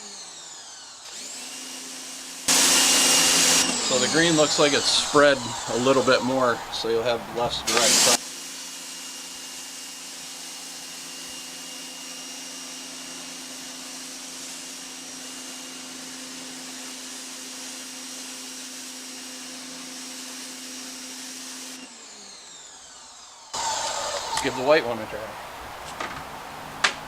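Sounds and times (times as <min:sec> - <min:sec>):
pressure washer motor humming: 0:00.0 - 0:08.2, 0:23.6 - 0:27.0.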